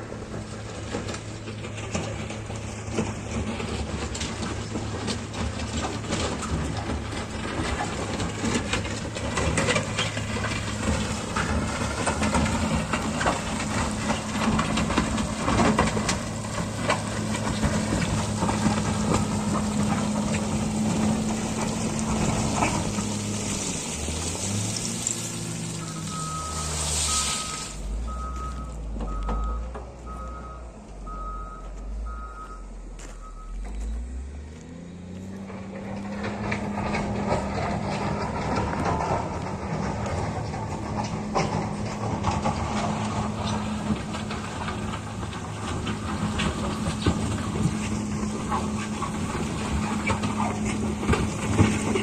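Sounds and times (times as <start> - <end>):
heavy diesel engine running: 0.0 - 52.0.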